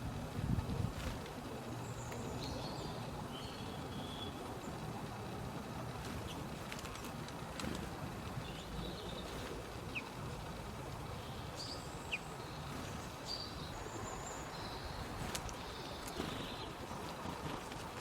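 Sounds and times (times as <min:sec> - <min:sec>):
birds chirping: 0:00.0 - 0:18.0
low outdoor rumble: 0:00.0 - 0:18.0.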